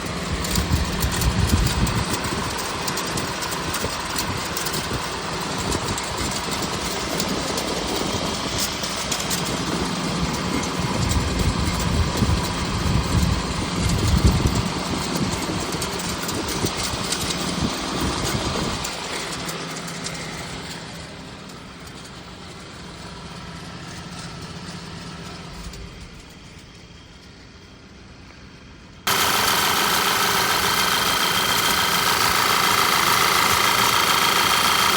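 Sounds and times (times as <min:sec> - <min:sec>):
car engine running: 0:29.1 - 0:34.9.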